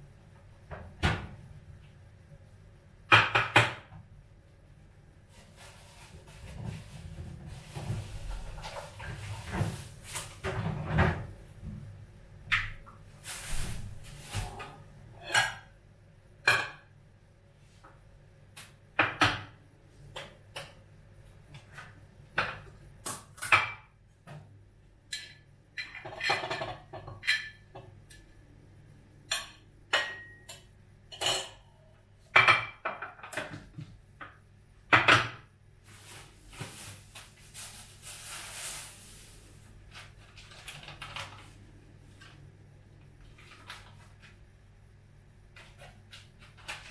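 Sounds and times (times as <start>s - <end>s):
dishes and cutlery clinking: 25.1s - 27.9s, 29.3s - 31.7s.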